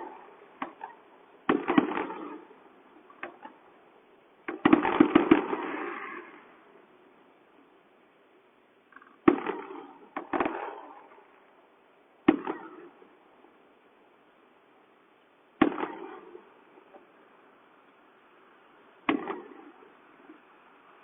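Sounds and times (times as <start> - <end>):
fireworks bangs with echo: 0.0 - 3.7, 4.4 - 6.7, 9.0 - 11.5, 12.2 - 13.2, 15.6 - 17.1, 19.0 - 20.4.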